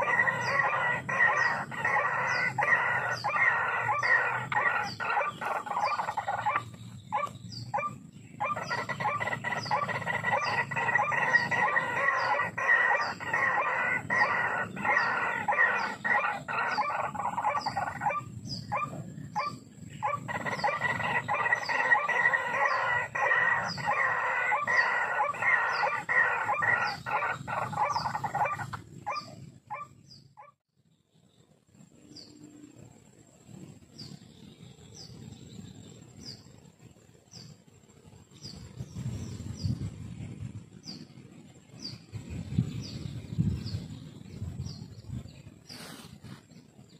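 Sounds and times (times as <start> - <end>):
waterhens calling: 0.0 - 30.5.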